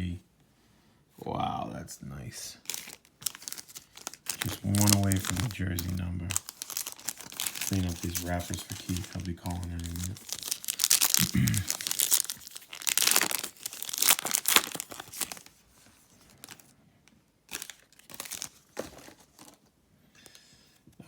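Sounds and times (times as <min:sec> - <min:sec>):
plastic wrappers crumpling and tearing: 0:02.6 - 0:16.7, 0:17.5 - 0:19.6.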